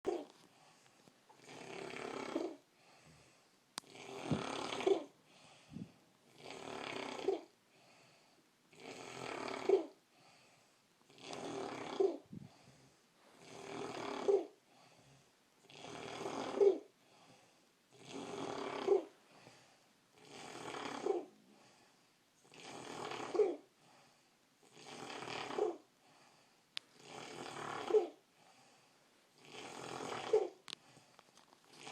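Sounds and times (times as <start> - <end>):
person snoring with squeak: 0.1 - 0.3, 1.4 - 2.6, 3.8 - 5.2, 6.3 - 7.5, 8.8 - 10.0, 11.1 - 12.3, 13.4 - 14.6, 15.6 - 16.9, 18.0 - 19.2, 20.2 - 21.4, 22.4 - 23.7, 24.6 - 25.9, 27.0 - 28.2, 29.4 - 30.6, 31.7 - 31.9.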